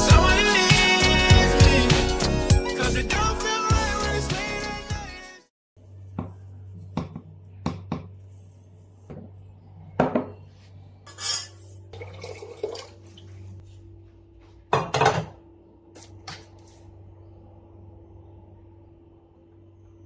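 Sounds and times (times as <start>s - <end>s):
low steady hum: 5.8s - 20.0s
dishes and utensils clattering: 11.1s - 11.6s.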